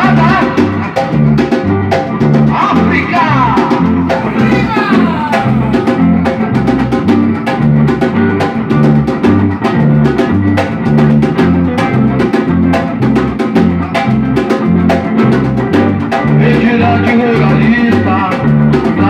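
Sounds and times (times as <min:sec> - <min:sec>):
drums and percussion: 0:00.0 - 0:19.0
guitar: 0:00.0 - 0:19.0
repeating bass line: 0:03.7 - 0:17.0.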